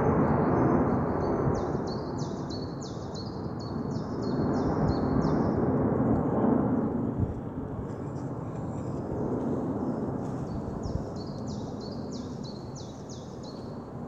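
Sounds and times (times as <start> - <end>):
aircraft passing overhead: 0.0 - 14.0
bird chirping: 9.9 - 13.8.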